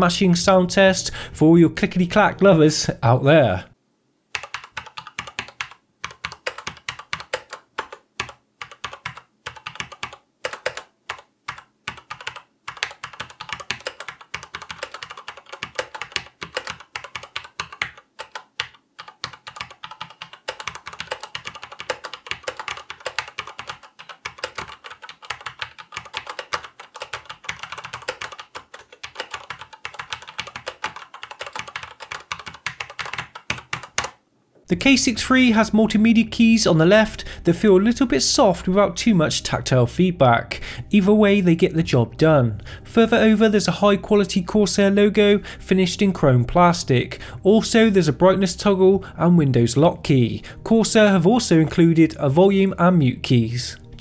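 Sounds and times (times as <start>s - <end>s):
mechanical keyboard typing: 4.3s - 34.2s.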